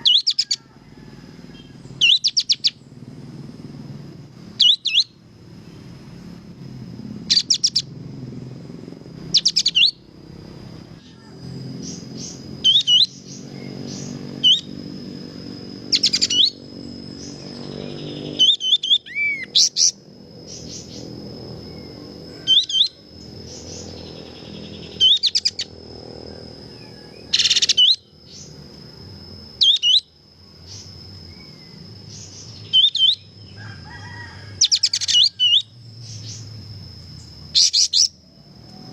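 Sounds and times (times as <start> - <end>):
low background hum: 0.0 - 38.9
bird singing chirped phrases: 1.5 - 3.0, 4.6 - 5.8, 7.2 - 7.9, 9.2 - 10.0, 10.9 - 28.7, 29.6 - 33.5.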